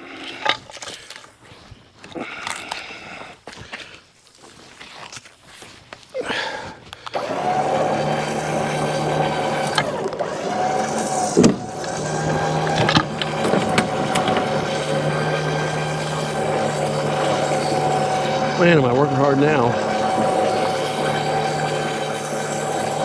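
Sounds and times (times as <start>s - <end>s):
engine starting and running: 7.1s - 23.0s.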